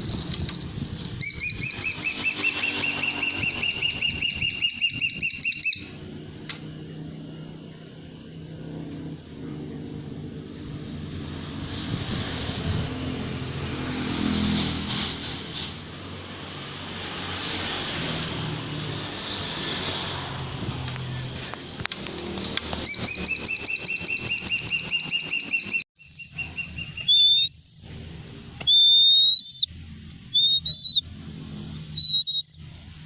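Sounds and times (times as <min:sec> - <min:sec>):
eagle calling: 0:01.2 - 0:06.0, 0:22.8 - 0:27.8, 0:28.6 - 0:29.7, 0:30.3 - 0:31.0, 0:32.0 - 0:32.6.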